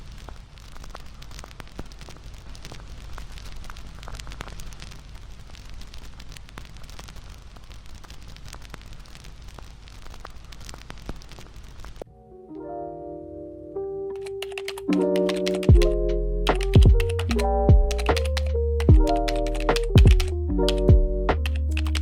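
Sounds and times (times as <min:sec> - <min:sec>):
bonfire crackling and popping: 0:00.0 - 0:12.1
soft piano notes: 0:12.1 - 0:22.0.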